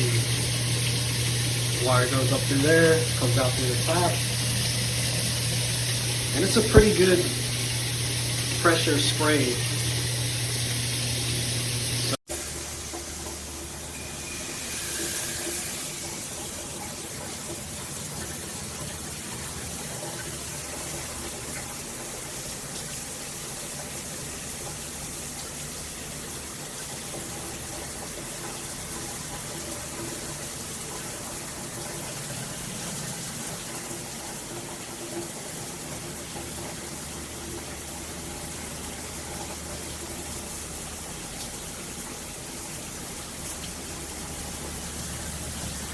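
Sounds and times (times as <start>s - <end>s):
shower head spraying water: 0.0s - 18.5s, 42.8s - 45.9s.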